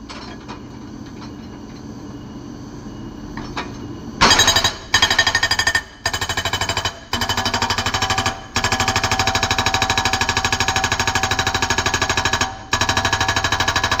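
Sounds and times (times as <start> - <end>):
hydraulic breaker hammering rock: 4.2 - 14.0.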